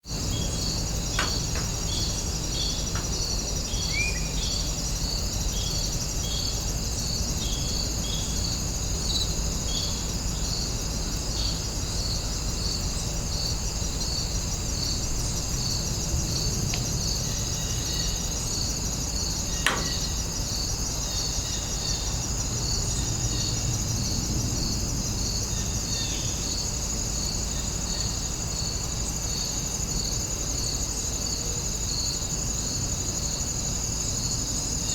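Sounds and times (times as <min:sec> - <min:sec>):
insects chirring: 0:00.0 - 0:34.9
rising bird chirp: 0:00.2 - 0:04.8.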